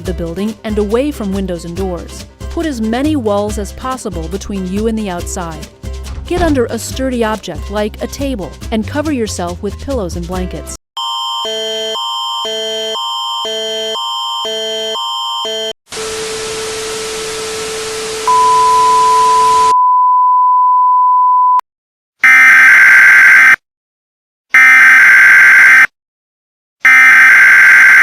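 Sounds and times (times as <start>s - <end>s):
loud steady beep tone: 18.2s - 21.6s.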